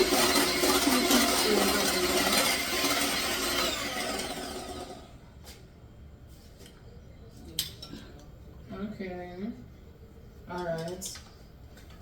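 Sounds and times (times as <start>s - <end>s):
electric mixer running: 0.0s - 5.2s.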